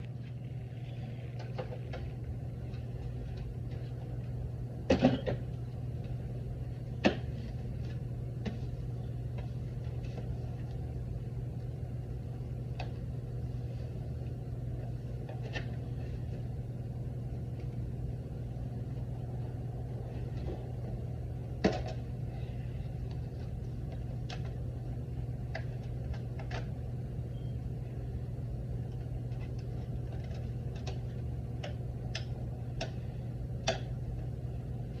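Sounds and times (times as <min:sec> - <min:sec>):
disc player mechanism humming: 0:00.0 - 0:35.0
mechanism clicks and clunks: 0:33.6 - 0:34.0.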